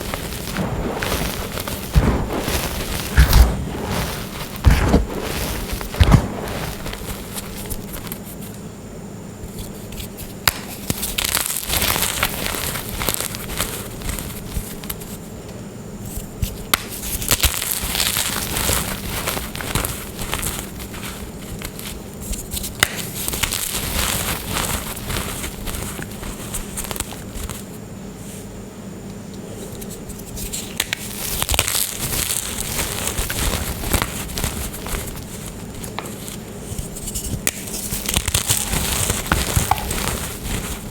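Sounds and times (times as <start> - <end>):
chalk crunching by hand: 0.0 - 8.2, 29.8 - 40.9.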